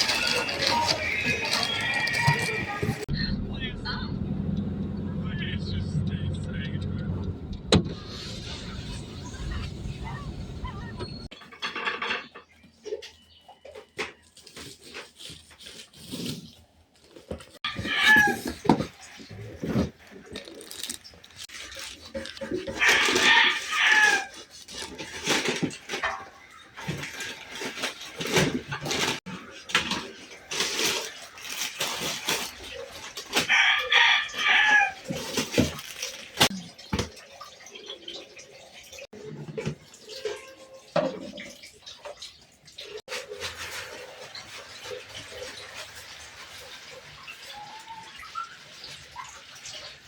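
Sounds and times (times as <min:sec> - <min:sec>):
household clattering: 0:00.0 - 0:03.1, 0:10.8 - 0:12.5
rooster crowing: 0:17.7 - 0:18.5, 0:33.5 - 0:35.0.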